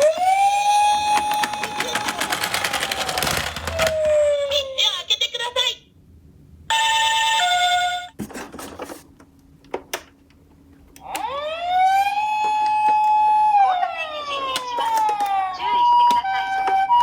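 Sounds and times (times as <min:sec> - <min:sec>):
toy siren wail: 0:00.0 - 0:04.7, 0:11.0 - 0:17.0.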